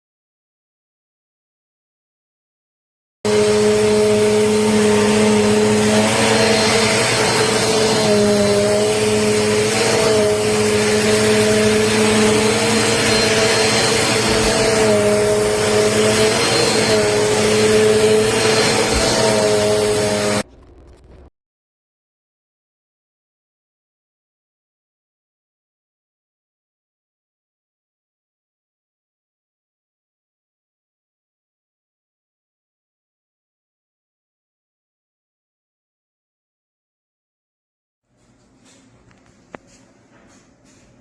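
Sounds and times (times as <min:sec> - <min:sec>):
vacuum cleaner running: 0:03.3 - 0:20.8.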